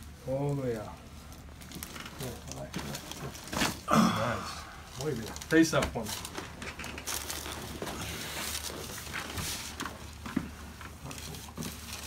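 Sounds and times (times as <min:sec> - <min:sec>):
rustling on padded table: 0:05.7 - 0:12.0.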